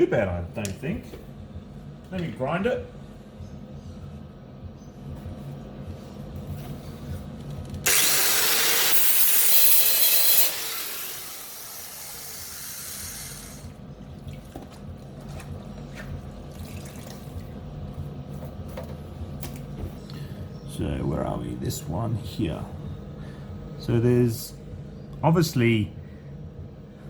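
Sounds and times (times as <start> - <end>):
grinder grinding steel: 7.9 - 13.7.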